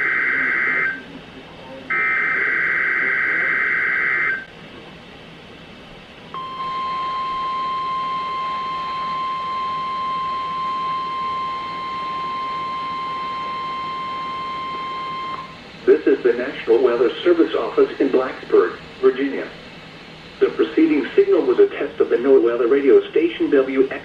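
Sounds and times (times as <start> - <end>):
steady warning alarm tone: 0.0 - 1.0, 1.9 - 4.5, 6.3 - 18.8
radio hiss: 0.0 - 6.4, 7.2 - 24.0.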